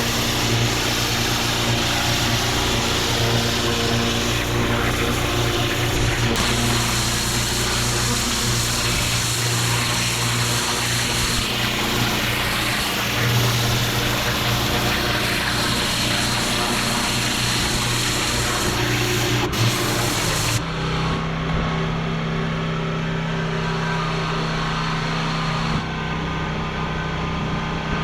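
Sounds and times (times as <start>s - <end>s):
high-pressure water spray hiss: 0.0s - 20.6s
pressure washer engine drone: 0.0s - 28.0s.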